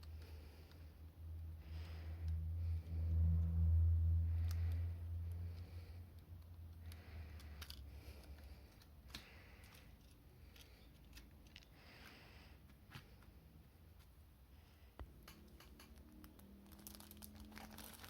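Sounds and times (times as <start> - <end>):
low hum: 0.0 - 12.6
small plastic items clicking: 4.4 - 12.2.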